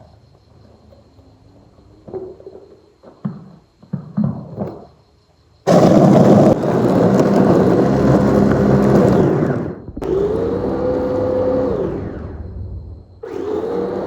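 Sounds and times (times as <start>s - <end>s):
electric motor grinding: 5.7s - 14.0s.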